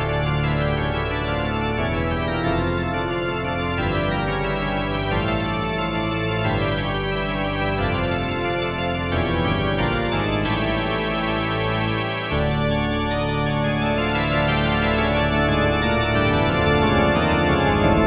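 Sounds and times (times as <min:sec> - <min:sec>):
organ music: 0:00.0 - 0:18.0.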